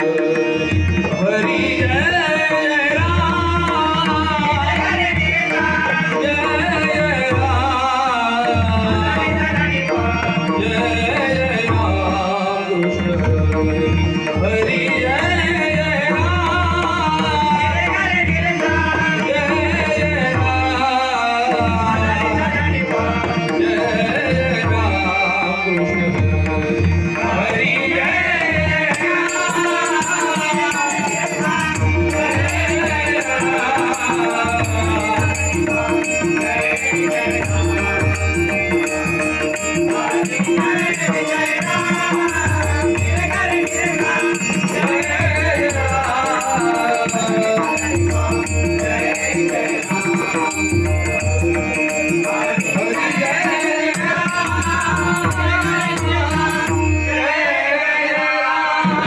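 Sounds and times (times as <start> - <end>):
harmonium tones: 0.0 - 59.0
group singing devotional song: 27.1 - 59.0
small hand cymbals jingling: 29.0 - 57.0.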